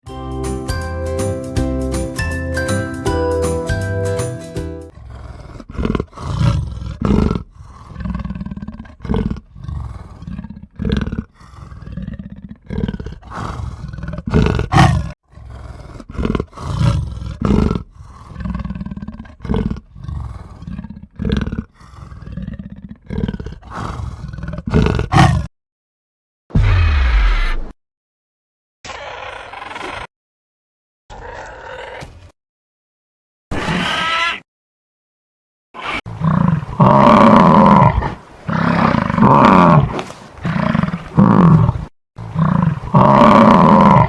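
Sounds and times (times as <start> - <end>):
jingling music: 0.0 - 4.9
large animal roaring and grunting: 4.9 - 25.5, 31.1 - 32.0, 35.8 - 44.0.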